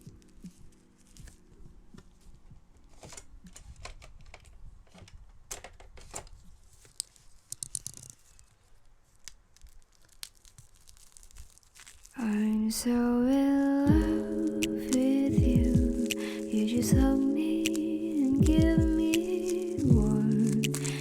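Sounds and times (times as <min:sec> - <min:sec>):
packaging rustling and crinkling: 0:00.0 - 0:18.4, 0:19.0 - 0:21.0
small tearing sounds: 0:06.1 - 0:12.7, 0:19.0 - 0:21.0.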